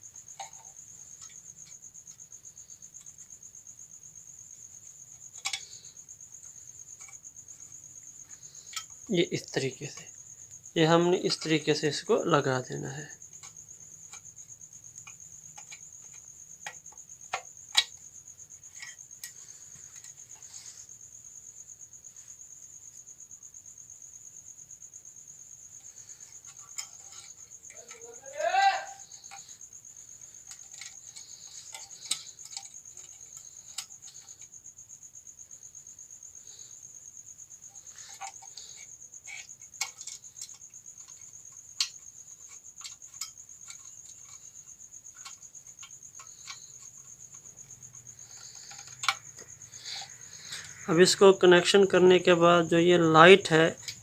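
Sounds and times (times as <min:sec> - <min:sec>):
small clicks and taps of parts: 0:00.3 - 0:02.2, 0:04.8 - 0:07.8, 0:08.6 - 0:09.1, 0:13.3 - 0:20.5, 0:25.8 - 0:28.1, 0:30.3 - 0:34.5, 0:37.9 - 0:50.8, 0:53.8 - 0:54.0.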